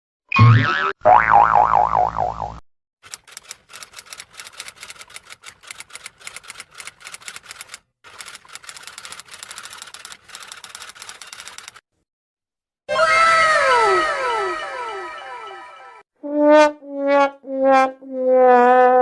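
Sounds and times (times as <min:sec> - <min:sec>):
rapid typing on keys: 0:03.0 - 0:11.8.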